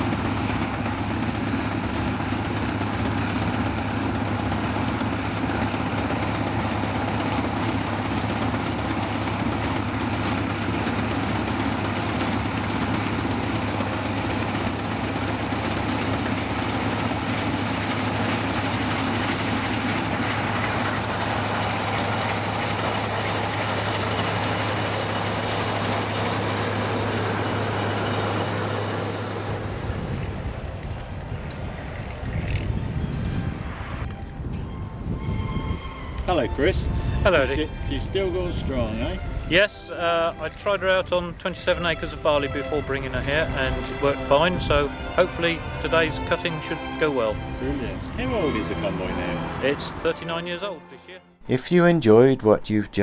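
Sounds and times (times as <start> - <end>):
machinery clatter: 0.0 - 32.7
combine harvester engine hum: 0.0 - 51.8.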